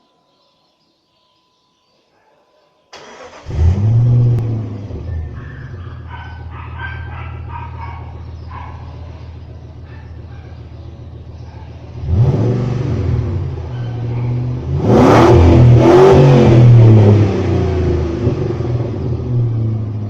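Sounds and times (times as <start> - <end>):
car engine cranking: 2.9 - 6.5
car engine revving then idling: 3.0 - 5.4, 11.9 - 20.0.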